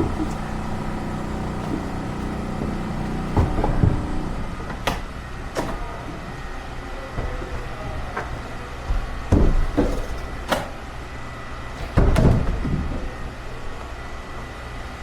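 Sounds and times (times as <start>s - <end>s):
heavy low thumps: 0.0s - 4.6s
steady low hum: 0.0s - 15.0s
sharp knocks: 8.9s - 10.7s.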